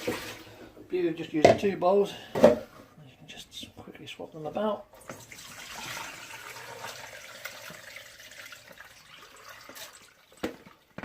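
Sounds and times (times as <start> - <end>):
water pouring off drained pasta: 5.0 - 11.0.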